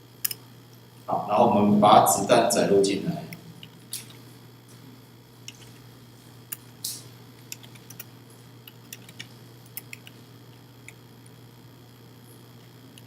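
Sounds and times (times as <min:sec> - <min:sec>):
low electrical hum: 0:00.0 - 0:13.0
computer keyboard keys clicking: 0:07.5 - 0:08.1, 0:08.7 - 0:10.2.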